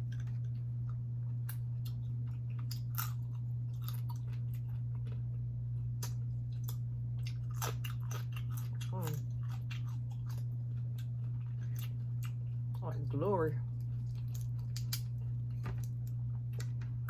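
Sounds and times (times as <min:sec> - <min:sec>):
chewing crab: 0:00.0 - 0:16.9
steady low hum: 0:00.0 - 0:17.0
crab shell cracking: 0:13.8 - 0:16.9.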